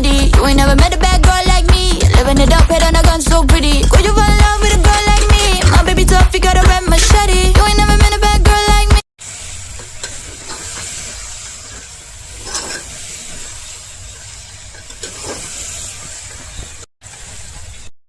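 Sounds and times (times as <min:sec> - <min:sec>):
gravy sizzling in a pan: 0:09.2 - 0:17.9.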